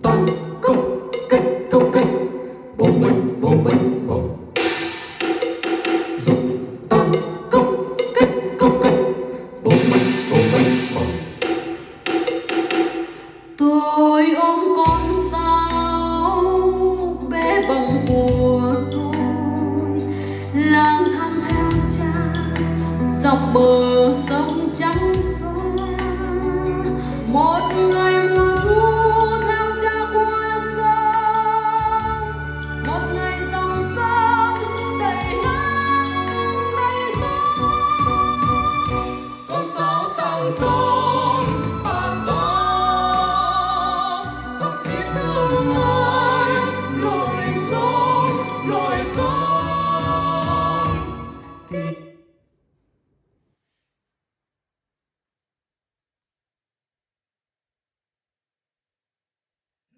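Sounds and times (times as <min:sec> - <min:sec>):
person singing: 0:00.0 - 0:04.8, 0:06.2 - 0:11.4, 0:13.6 - 0:52.1
instrumental backing music: 0:00.0 - 0:51.7.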